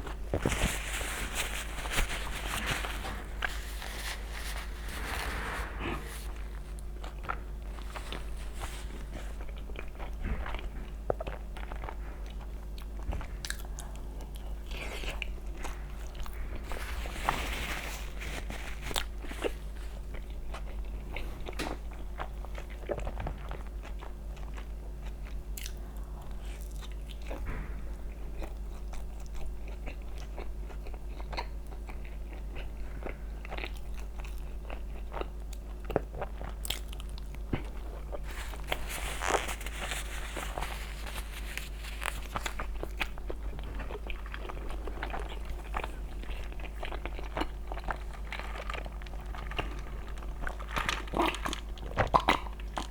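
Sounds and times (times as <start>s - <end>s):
steady low hum: 0.0s - 52.9s
crunchy bites and chewing: 28.1s - 52.9s.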